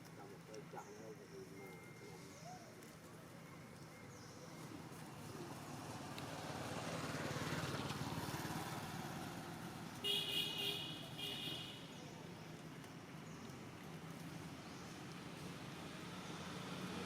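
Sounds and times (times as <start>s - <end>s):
motor vehicle passing: 4.5s - 11.4s, 13.9s - 17.0s
car horn honks: 10.0s - 11.8s.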